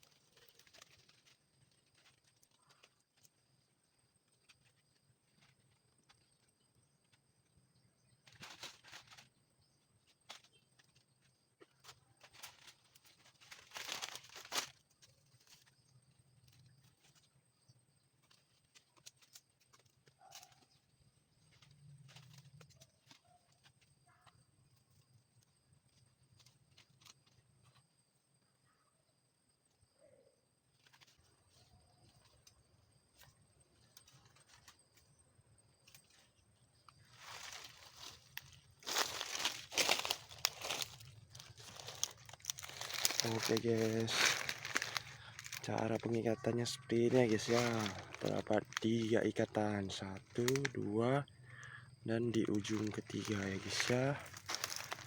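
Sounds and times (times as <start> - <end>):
rustling and crackling of stalks: 0.0 - 28.5, 30.6 - 55.0
stalk snapping: 11.8 - 15.6, 37.2 - 46.2, 47.0 - 50.9, 52.4 - 55.0.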